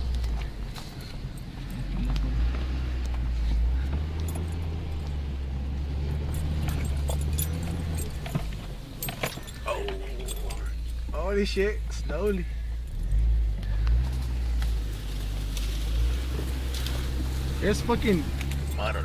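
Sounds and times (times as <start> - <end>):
engine droning from inside cab: 0.0 - 19.0
vehicle rattles and knocks: 0.0 - 19.0.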